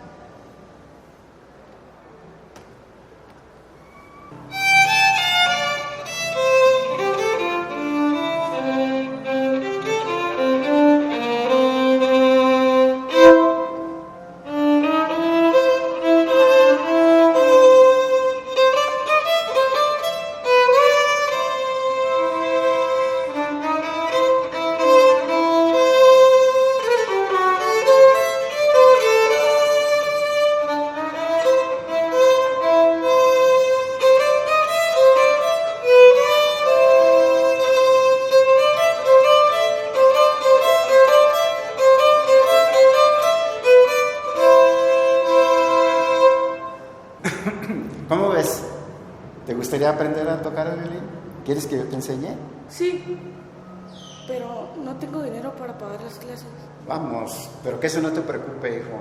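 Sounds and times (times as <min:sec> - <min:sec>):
violin slow melody: 0:03.8 - 0:47.2.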